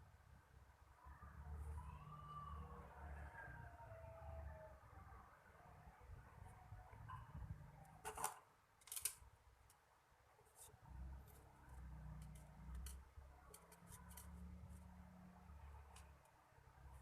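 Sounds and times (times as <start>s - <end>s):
faint clicks of handling: 8.0s - 9.8s.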